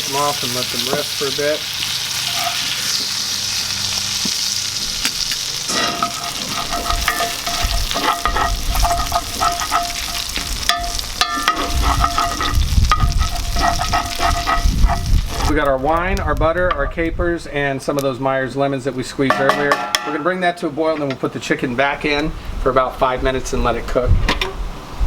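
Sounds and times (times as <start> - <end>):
butter and oil sizzling in skillet: 0.0 - 15.5
stirring in a skillet: 0.0 - 15.5.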